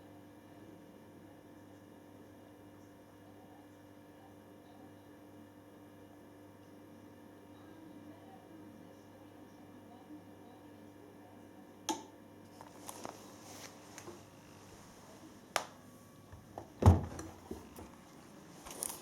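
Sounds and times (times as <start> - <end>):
faint steady hum: 0.0 - 19.0
dull thump: 16.8 - 17.3.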